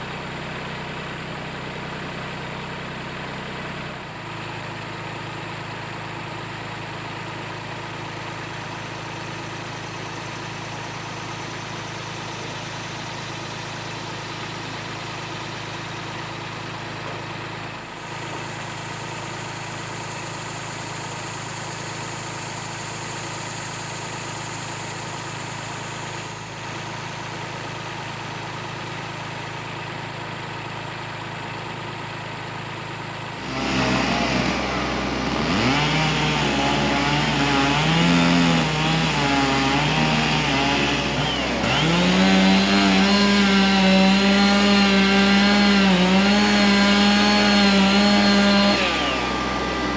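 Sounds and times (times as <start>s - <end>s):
engine idling: 0.0s - 49.9s
loud engine revving: 33.4s - 49.9s.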